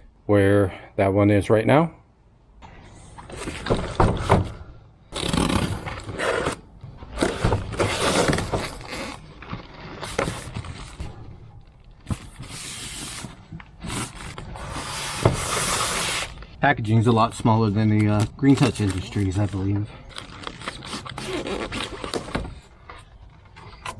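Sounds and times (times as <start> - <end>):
cardboard scraping and rustling: 3.2 - 4.6, 5.2 - 16.4, 20.2 - 23.9.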